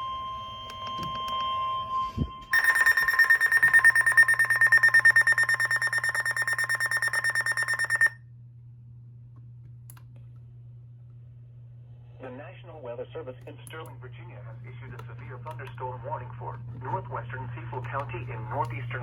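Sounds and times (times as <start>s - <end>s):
high-pitched pulsing alarm beep: 0.0s - 8.2s.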